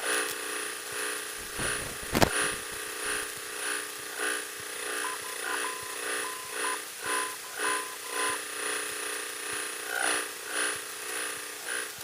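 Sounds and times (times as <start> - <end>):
sharp click: 1.4 - 2.7.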